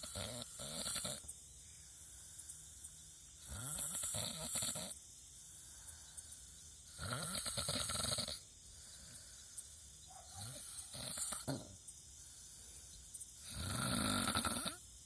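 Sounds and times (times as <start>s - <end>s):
person snoring: 0.0s - 1.2s, 3.4s - 5.0s, 6.9s - 8.4s, 10.4s - 11.8s, 13.4s - 14.8s.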